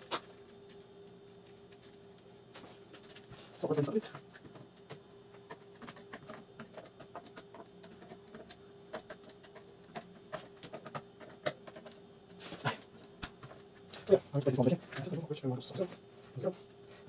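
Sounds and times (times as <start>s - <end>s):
small parts clicking: 0.0s - 4.0s
faint steady hum: 0.0s - 17.0s.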